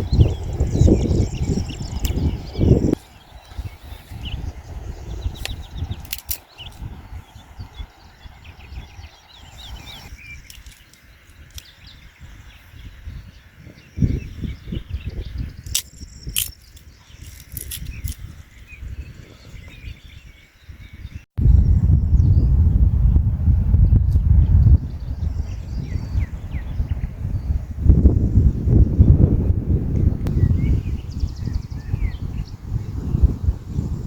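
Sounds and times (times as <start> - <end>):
small birds chirping: 0.0 - 21.8, 24.1 - 29.2, 30.2 - 33.8
wind rumble on microphone: 0.0 - 34.0
sharp clicks: 5.4 - 6.8, 10.4 - 11.7, 15.6 - 18.2.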